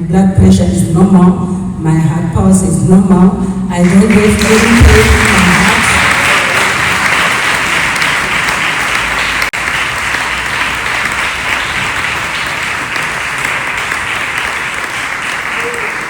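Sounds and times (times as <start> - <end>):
congregation applauding: 3.8 - 16.0.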